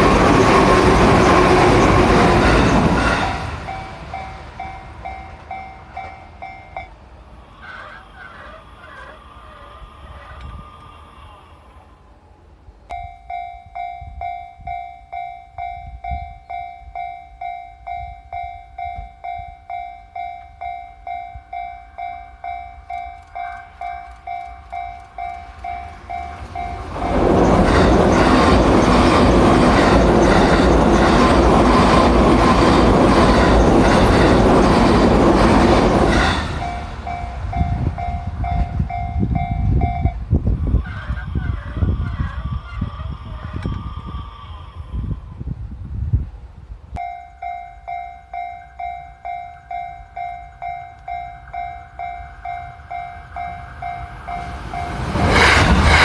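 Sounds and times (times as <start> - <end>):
level crossing warning bell dinging: 0.0 - 7.1, 12.9 - 40.3, 47.0 - 55.2
train passing over rails: 0.0 - 56.0.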